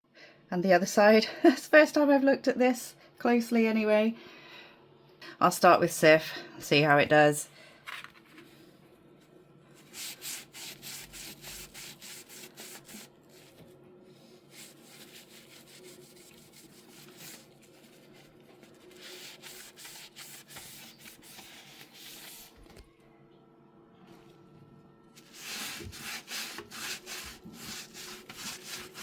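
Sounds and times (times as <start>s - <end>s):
sponge scrubbing steel panel: 9.8s - 13.6s, 14.4s - 18.3s, 25.2s - 29.0s.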